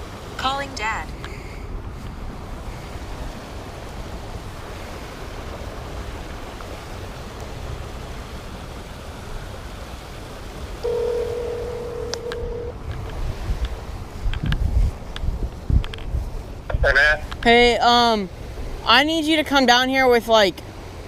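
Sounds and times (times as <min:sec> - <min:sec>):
flowing water: 0:00.0 - 0:21.0
wind: 0:00.0 - 0:21.0
phone ringback tone: 0:10.8 - 0:12.8.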